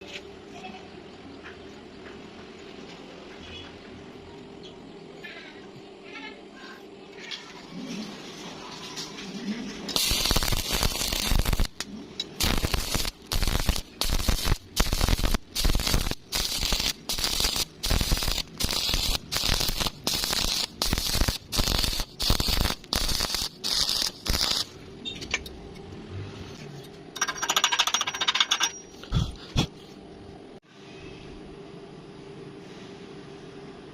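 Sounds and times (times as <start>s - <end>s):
buzzing welding burst: 9.9s - 11.8s, 12.4s - 24.8s
electric arc welding crackling: 9.9s - 24.8s.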